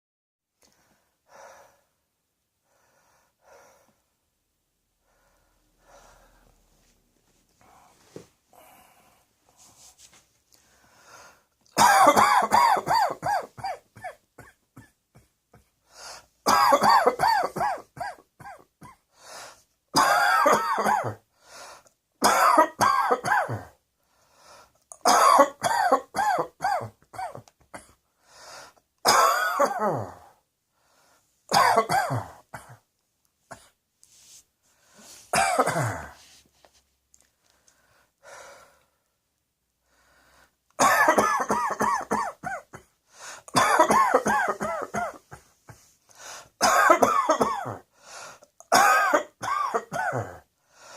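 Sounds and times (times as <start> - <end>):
person breathing: 0.6 - 4.2, 5.0 - 7.0, 7.6 - 11.6, 15.8 - 16.4, 19.1 - 19.7, 21.3 - 22.0, 24.0 - 24.8, 28.2 - 28.8, 30.7 - 31.4, 34.0 - 35.3, 37.3 - 39.2, 39.8 - 40.6, 43.0 - 43.5, 45.7 - 46.6, 47.9 - 48.6, 50.6 - 50.9
person coughing: 11.7 - 15.7, 16.5 - 19.0, 20.0 - 21.2, 22.2 - 23.8, 25.0 - 28.0, 29.1 - 30.3, 31.5 - 32.9, 35.3 - 36.2, 40.8 - 45.9, 46.6 - 47.9, 48.6 - 50.5.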